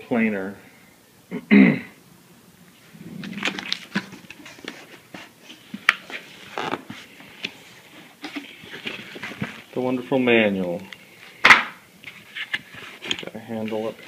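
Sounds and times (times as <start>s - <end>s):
cardboard packaging rustling: 2.8s - 10.8s, 12.0s - 14.0s.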